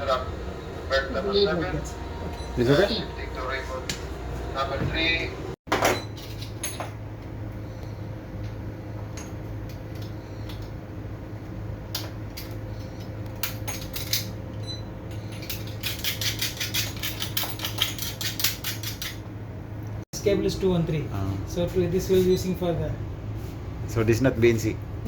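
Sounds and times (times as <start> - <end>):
steady low hum: 0.0 - 25.0
metal parts and tools clinking: 5.8 - 7.0, 12.0 - 19.2.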